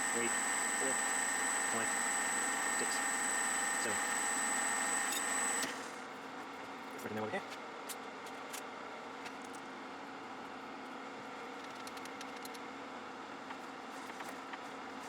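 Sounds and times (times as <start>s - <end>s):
faint ticks from lathe work: 0.0s - 5.7s
metalworking lathe motor hum: 0.0s - 5.8s.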